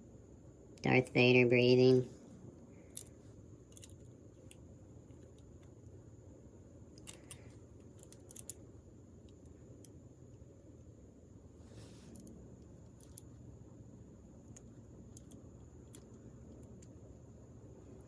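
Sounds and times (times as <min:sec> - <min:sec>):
low steady hum: 0:00.0 - 0:18.0
pliers clicking on wire: 0:07.0 - 0:08.6.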